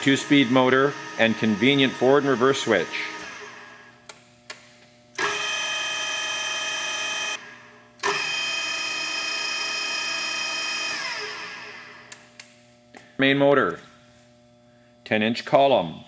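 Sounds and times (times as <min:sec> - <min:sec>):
drill gear whine: 0:00.0 - 0:03.9, 0:05.2 - 0:07.4, 0:08.0 - 0:12.1
switch clicks: 0:12.1 - 0:12.6.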